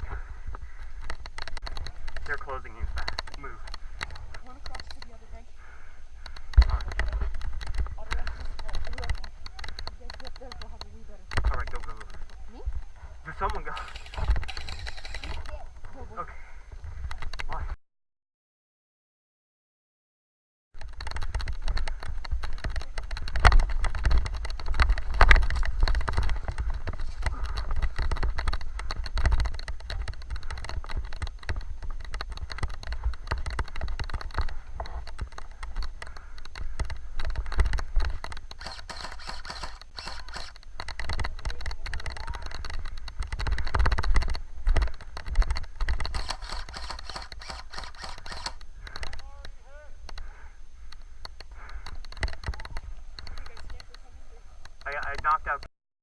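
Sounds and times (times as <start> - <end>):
gear rattling: 6.2 - 16.0, 20.8 - 49.4.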